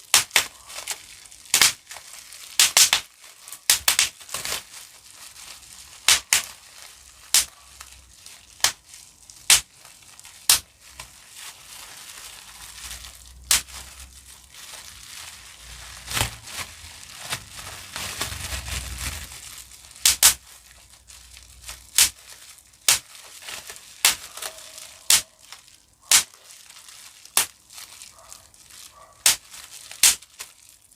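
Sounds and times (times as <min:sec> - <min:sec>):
bubble wrap popping: 0:00.0 - 0:30.9
plastic sheet crinkling: 0:00.0 - 0:30.9.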